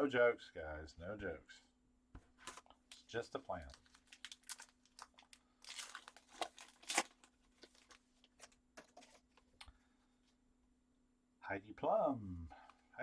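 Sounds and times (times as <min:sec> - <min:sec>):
wrapper tearing and crinkling: 0:03.6 - 0:09.2.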